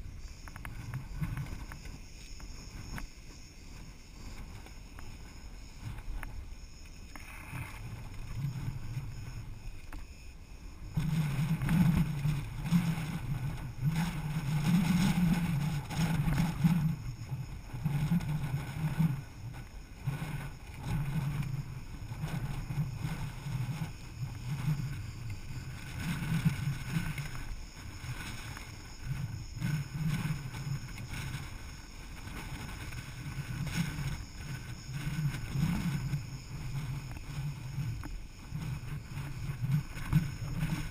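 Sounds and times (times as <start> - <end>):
tent fabric flapping: 11.0 - 40.9.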